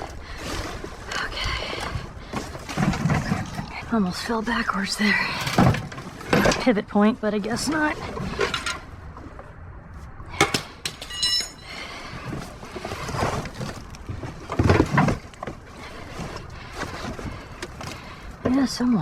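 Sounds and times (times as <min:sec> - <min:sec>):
heavy scraping thuds: 0:00.7 - 0:06.8
short metallic ring: 0:11.0 - 0:11.7.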